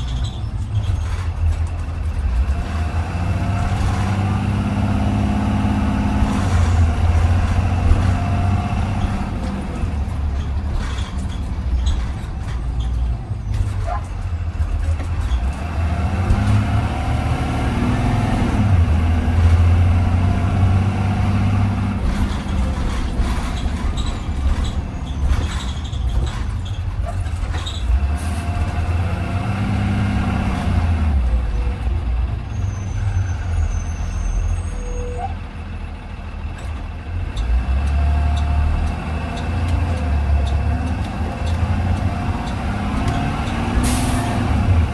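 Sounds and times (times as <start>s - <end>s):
bus engine droning: 0.0s - 44.9s
road noise: 0.0s - 44.9s.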